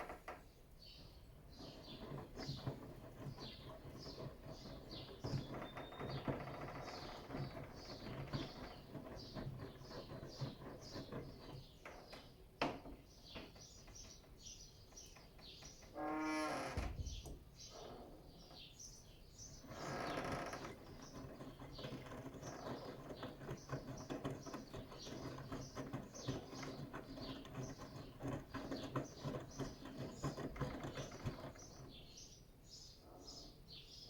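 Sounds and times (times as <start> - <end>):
small clicks and squeaks: 1.6 - 12.4, 19.6 - 32.2.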